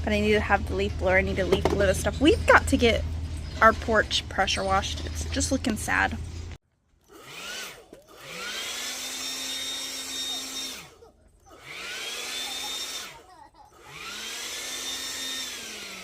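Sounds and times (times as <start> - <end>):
leaf blower motor whine: 7.0 - 16.0.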